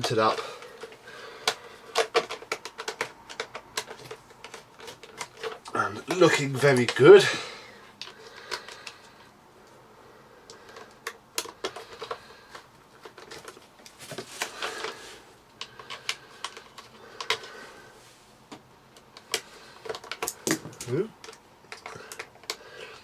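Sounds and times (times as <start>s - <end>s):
plastic scraping turns: 0.0s - 7.4s, 10.5s - 18.0s
plastic parts clicking and rattling: 0.0s - 9.3s, 10.5s - 17.8s, 18.5s - 23.0s.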